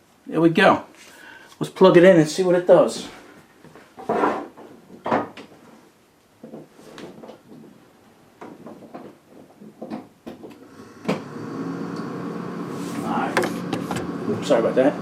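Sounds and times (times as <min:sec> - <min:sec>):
refrigerator humming: 0:10.7 - 0:15.0
knocks and clicks of handling: 0:13.4 - 0:14.1.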